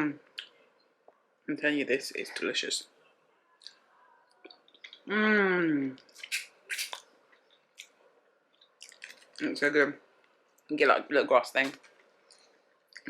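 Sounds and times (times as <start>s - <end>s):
wet chewing clicks and smacks: 6.2s - 9.4s.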